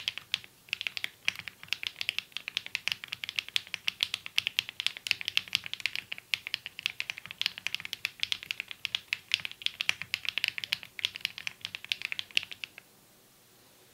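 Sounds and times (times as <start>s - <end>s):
mechanical keyboard typing: 0.0s - 12.8s.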